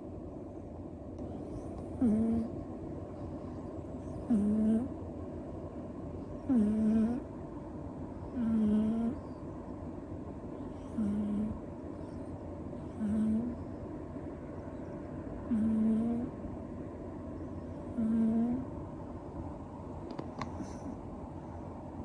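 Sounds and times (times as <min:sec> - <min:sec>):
steady background noise: 0:00.0 - 0:22.0
kitten snoring: 0:01.3 - 0:02.5, 0:04.0 - 0:05.0, 0:06.4 - 0:07.3, 0:08.3 - 0:09.2, 0:10.7 - 0:11.6, 0:12.8 - 0:13.6, 0:15.5 - 0:16.4, 0:17.8 - 0:18.7.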